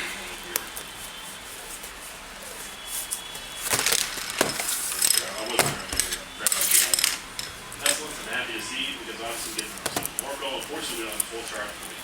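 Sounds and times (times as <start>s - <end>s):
packaging crinkling and clicking: 3.1s - 8.1s, 9.4s - 12.0s.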